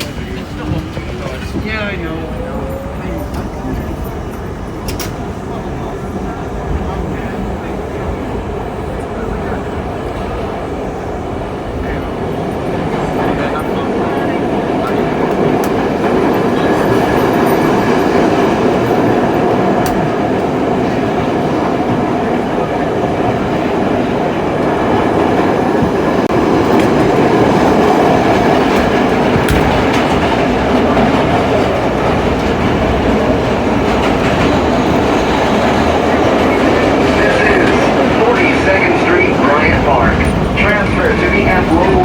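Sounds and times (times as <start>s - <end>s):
subway car wheels rumbling on track: 0.0s - 42.0s.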